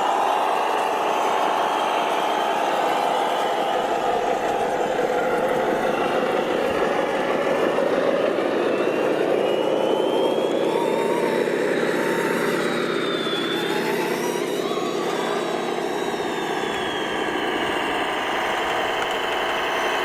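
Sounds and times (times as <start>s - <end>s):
model truck drivetrain whine: 3.3s - 20.0s.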